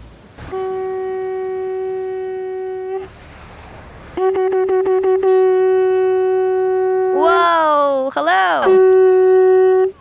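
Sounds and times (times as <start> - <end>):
conch shell horn blasts: 0.4 - 3.2, 4.1 - 7.6, 8.6 - 10.0.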